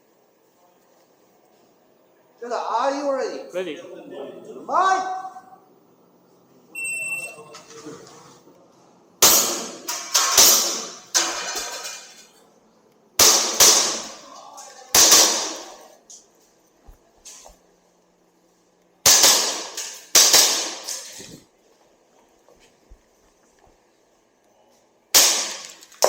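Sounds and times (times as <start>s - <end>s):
shot timer beep: 6.8s - 7.5s
airsoft pistol shots: 9.2s - 11.0s, 13.2s - 14.2s, 15.0s - 15.8s, 19.0s - 20.9s, 25.1s - 25.8s.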